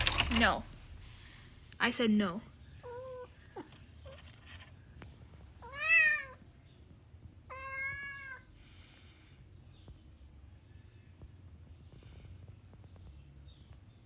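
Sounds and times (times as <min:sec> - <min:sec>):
cat meowing: 0:02.8 - 0:03.7, 0:05.6 - 0:06.4, 0:07.5 - 0:08.4.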